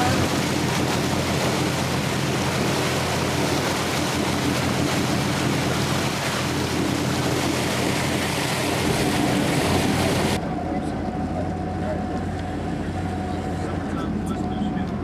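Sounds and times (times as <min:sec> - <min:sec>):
wind on microphone: 0:00.0 - 0:10.4
boat motor running: 0:00.0 - 0:15.0
rushing water and waves: 0:00.0 - 0:15.0.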